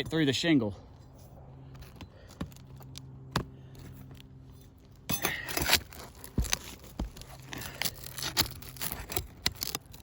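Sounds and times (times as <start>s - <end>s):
scraping and crackling shingles: 4.9s - 10.0s.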